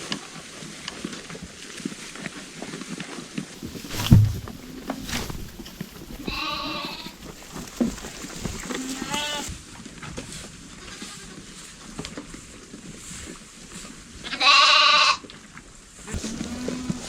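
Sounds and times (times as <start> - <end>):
sheep bleating: 8.7 - 9.5, 14.3 - 15.2.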